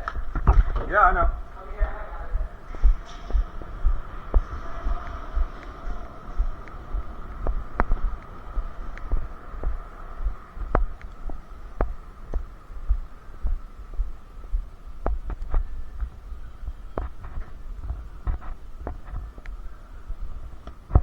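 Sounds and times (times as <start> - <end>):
low thumps of jostled camera: 0.0 - 5.0, 5.8 - 19.7, 20.6 - 21.0
faint hum: 0.0 - 21.0.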